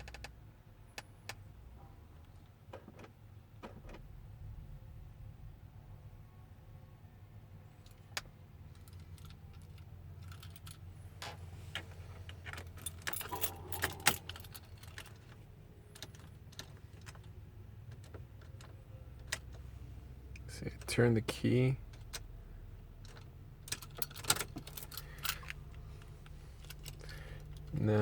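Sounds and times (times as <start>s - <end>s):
steady low hum: 4.1s - 28.0s
keys jangling and clinking: 8.7s - 10.9s, 12.1s - 17.4s, 23.0s - 28.0s.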